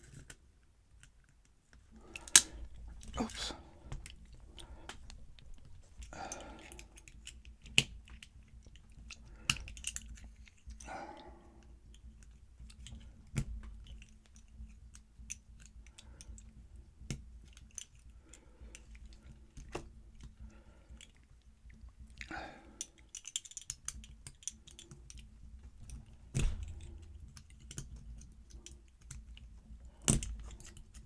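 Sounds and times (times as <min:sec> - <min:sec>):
metal lock parts clicking: 0:02.0 - 0:03.4, 0:04.9 - 0:10.9, 0:22.8 - 0:25.2, 0:25.8 - 0:29.3.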